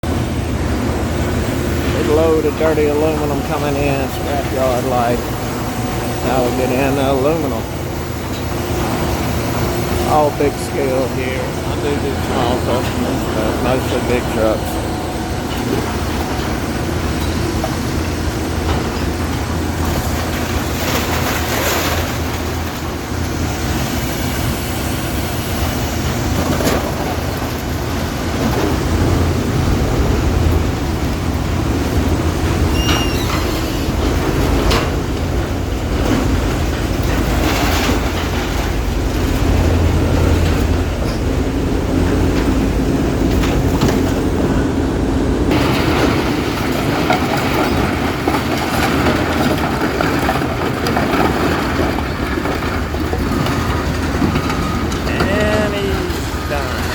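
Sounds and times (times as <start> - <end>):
diesel truck engine running: 0.0 - 56.9
high squeal: 32.6 - 34.0
scrap metal clattering: 45.5 - 56.9.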